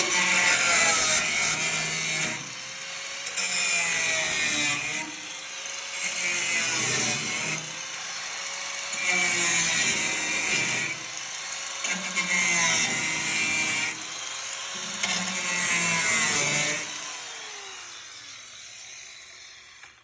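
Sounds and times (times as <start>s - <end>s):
power tool hissing cut: 0.0s - 20.0s
motor whine: 16.4s - 20.0s.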